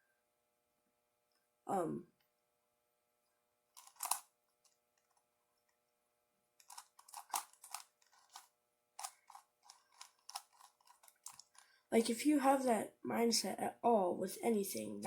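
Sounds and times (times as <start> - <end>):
plastic puzzle cube clacking: 3.8 - 4.3, 6.6 - 11.6.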